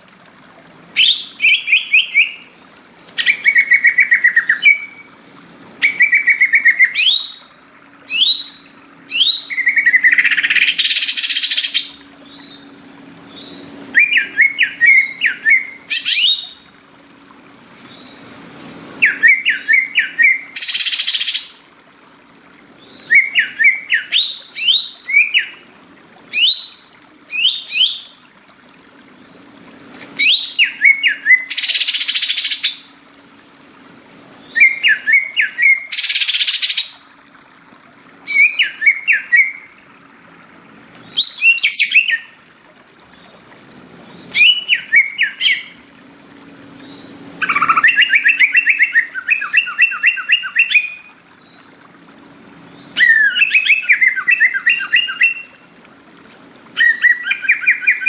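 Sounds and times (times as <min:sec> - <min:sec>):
bird chirping and whistling: 0:01.0 - 0:02.5, 0:03.2 - 0:05.1, 0:05.8 - 0:07.5, 0:08.1 - 0:12.7, 0:13.3 - 0:16.7, 0:19.0 - 0:21.6, 0:22.8 - 0:25.6, 0:26.3 - 0:28.2, 0:30.2 - 0:32.9, 0:34.4 - 0:37.0, 0:38.3 - 0:39.7, 0:41.0 - 0:42.4, 0:44.2 - 0:45.8, 0:46.8 - 0:51.1, 0:52.8 - 0:55.6, 0:56.8 - 0:58.0
fast bird trill: 0:47.4 - 0:51.0
harsh bird call: 0:47.4 - 0:51.0.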